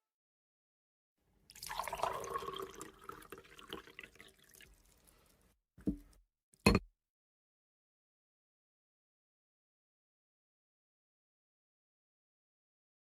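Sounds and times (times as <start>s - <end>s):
tea being poured: 1.5s - 5.3s.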